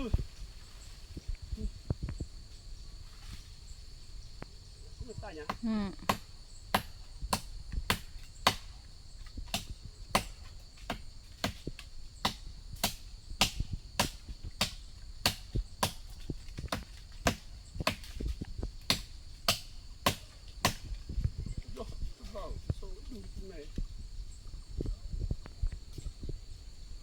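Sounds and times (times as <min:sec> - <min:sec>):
insects buzzing: 0:00.0 - 0:27.0
blade chopping wood: 0:05.5 - 0:08.7, 0:09.4 - 0:21.0.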